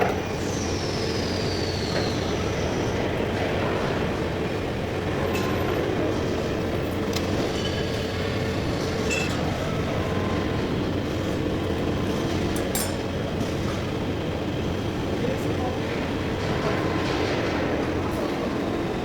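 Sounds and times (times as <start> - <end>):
lathe machine drone: 0.1 - 15.3.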